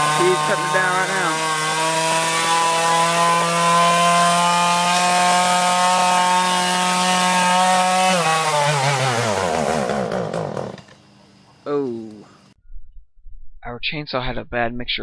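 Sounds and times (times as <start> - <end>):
chainsaw cutting wood: 0.0 - 11.2.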